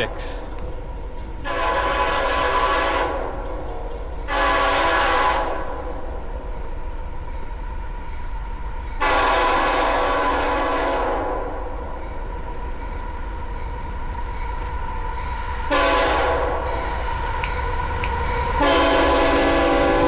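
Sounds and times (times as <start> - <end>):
train rumbling: 0.0 - 20.0
locomotive air horn blasts: 1.5 - 3.2, 4.3 - 5.6, 9.0 - 11.4, 15.7 - 16.5, 18.6 - 20.0.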